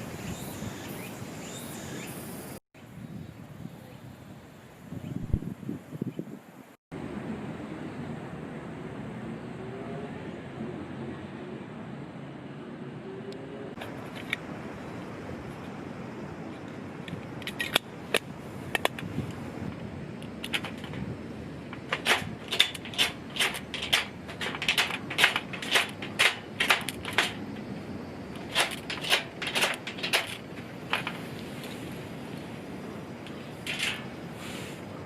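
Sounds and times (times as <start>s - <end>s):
sharp clicks and clatters: 20.2s - 31.3s, 33.2s - 34.2s.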